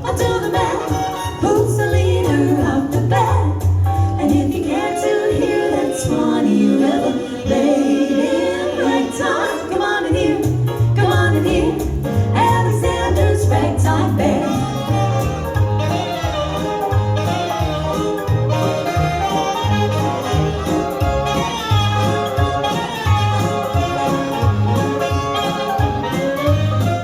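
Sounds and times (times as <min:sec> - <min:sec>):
female vocal group singing: 0:00.0 - 0:15.4
band accompaniment: 0:00.0 - 0:27.0.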